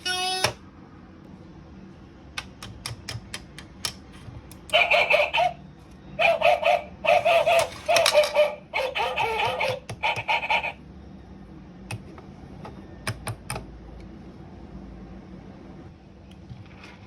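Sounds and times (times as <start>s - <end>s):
toy bird-like clucking notes: 4.6s - 5.6s, 6.2s - 10.8s.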